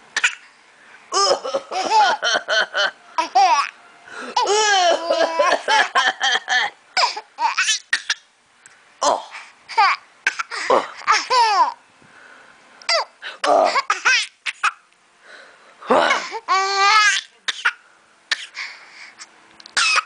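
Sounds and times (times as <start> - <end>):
young child giggling: 4.4 - 6.8.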